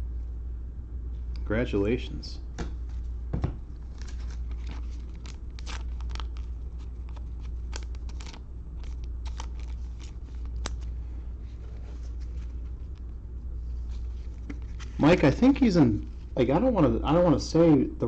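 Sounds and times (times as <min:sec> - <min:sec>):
steady low hum: 0:00.0 - 0:18.0
cards and plastic wrap crinkling: 0:03.8 - 0:16.4.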